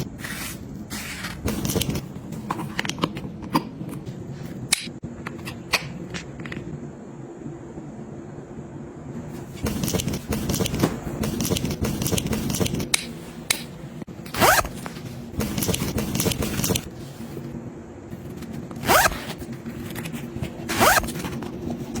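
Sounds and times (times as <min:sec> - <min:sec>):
bag zipper handling: 0:14.3 - 0:14.8, 0:18.8 - 0:19.4, 0:20.7 - 0:21.2
quick rising zip: 0:18.8 - 0:19.3.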